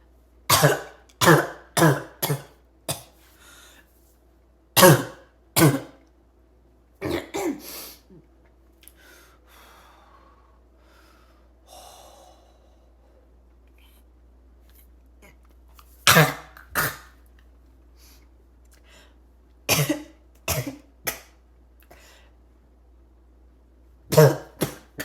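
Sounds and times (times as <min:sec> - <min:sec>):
person coughing harshly: 0:00.5 - 0:03.2, 0:04.8 - 0:06.0, 0:07.0 - 0:08.1, 0:16.0 - 0:17.2, 0:19.7 - 0:21.3, 0:24.1 - 0:25.0.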